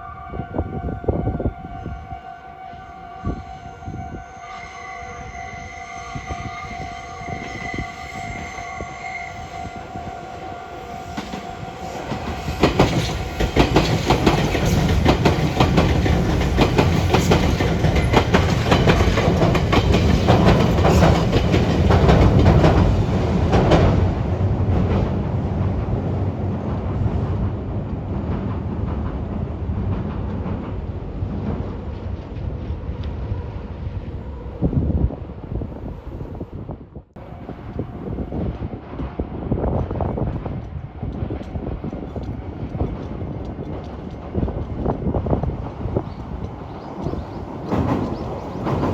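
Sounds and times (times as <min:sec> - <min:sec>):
train wheels clacking over rails: 0:09.7 - 0:25.2, 0:40.2 - 0:48.9.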